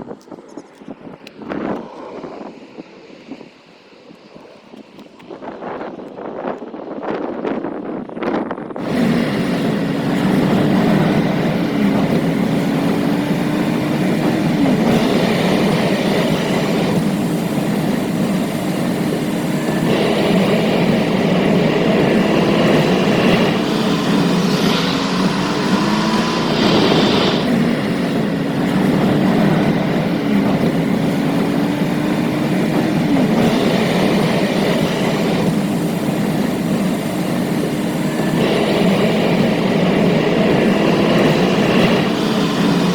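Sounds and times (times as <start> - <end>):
vehicle road rumble: 0.0 - 42.9
low hum rising and falling: 8.8 - 42.9
bright hiss: 9.0 - 42.9.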